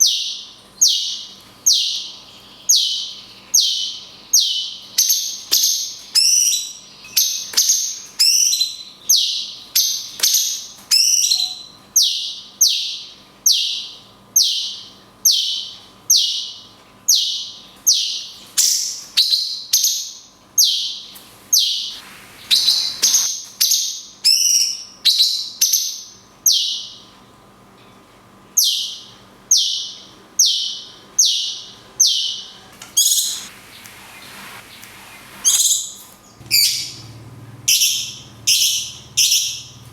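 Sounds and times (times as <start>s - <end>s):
bird repeating high downward call: 28.6s - 37.1s, 37.7s - 39.8s.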